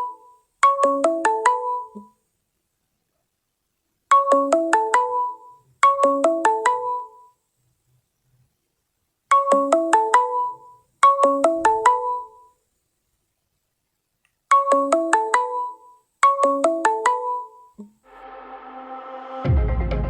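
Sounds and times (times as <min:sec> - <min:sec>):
phone ringtone: 0:00.0 - 0:02.1, 0:04.1 - 0:07.4, 0:09.3 - 0:12.6, 0:14.5 - 0:17.8.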